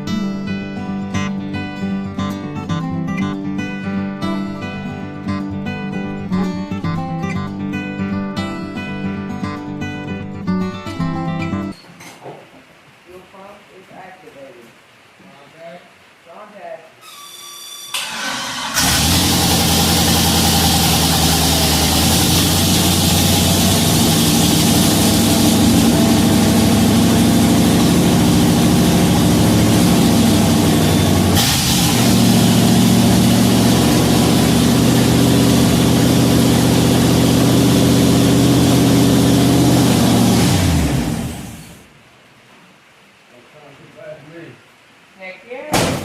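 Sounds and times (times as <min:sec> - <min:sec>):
truck engine cranking and idling: 0:17.9 - 0:41.9.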